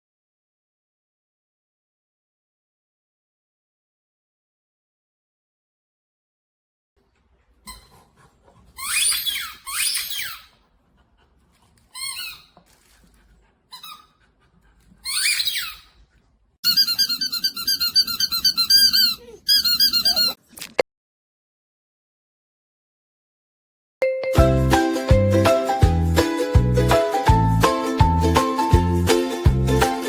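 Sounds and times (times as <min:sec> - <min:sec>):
dog toy squeaking: 0:07.7 - 0:08.0, 0:08.8 - 0:10.6, 0:11.9 - 0:12.6, 0:13.7 - 0:14.2, 0:15.0 - 0:16.0, 0:16.6 - 0:20.4.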